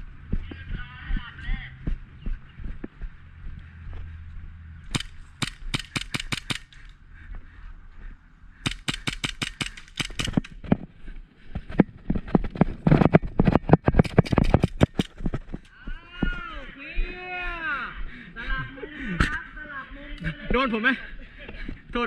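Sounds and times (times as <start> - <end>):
airsoft guns firing: 4.9 - 6.9, 8.6 - 10.6.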